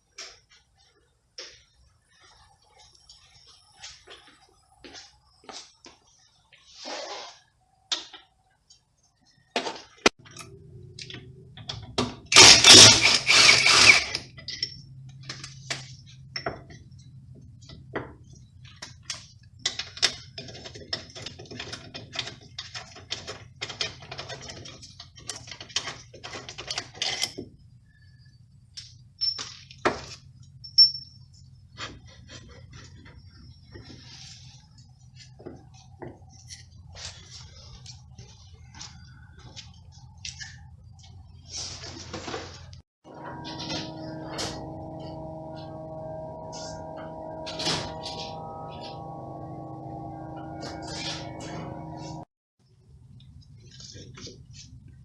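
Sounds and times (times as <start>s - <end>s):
loud rattling: 12.3s - 14.2s
metal tools clinking: 30.6s - 31.2s
low hum: 43.1s - 52.3s.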